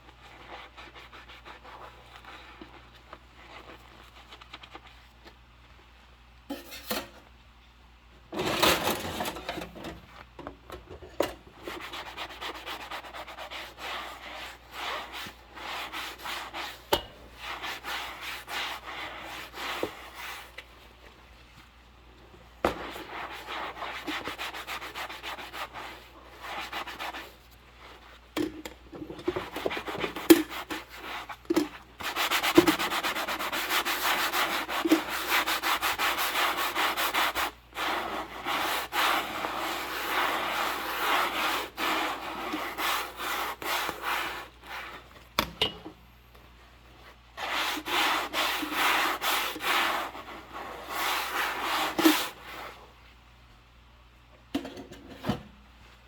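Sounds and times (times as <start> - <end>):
dishes scrubbed by hand: 11.6 - 20.6, 28.0 - 45.1, 47.4 - 52.8.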